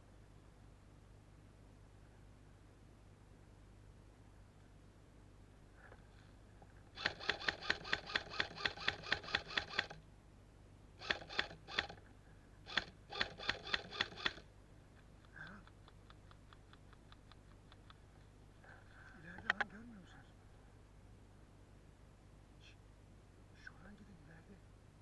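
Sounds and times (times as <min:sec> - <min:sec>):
airsoft guns firing: 0:07.0 - 0:10.0.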